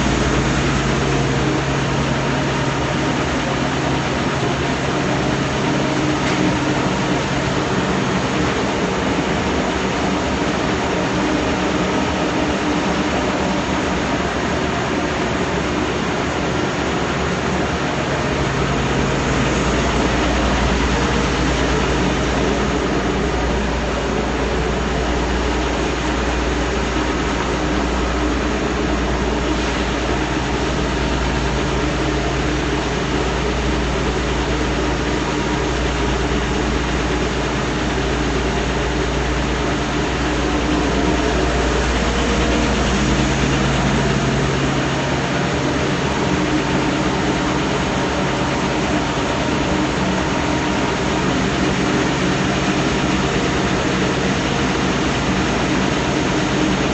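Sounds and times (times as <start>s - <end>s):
wood sander running: 37.8s - 56.4s.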